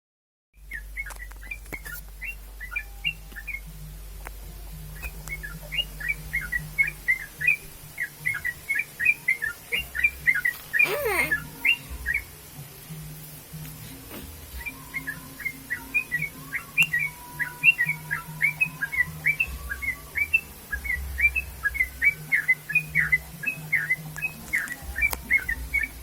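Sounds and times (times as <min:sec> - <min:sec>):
bulbul singing bubbly notes: 0:05.3 - 0:11.5.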